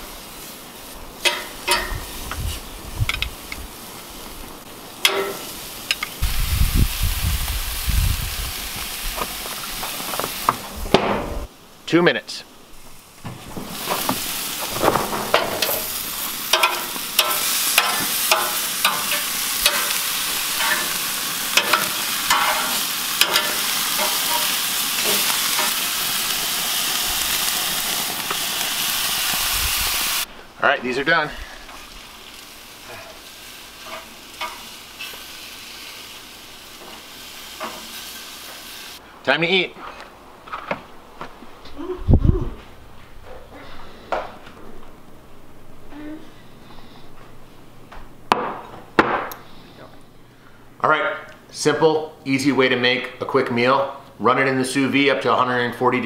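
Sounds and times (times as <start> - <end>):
meat sizzling on grill: 0.0 - 11.8, 12.6 - 39.0
metal clinks on grill grates: 1.2 - 2.1, 5.0 - 6.2, 15.3 - 25.8, 33.8 - 35.1.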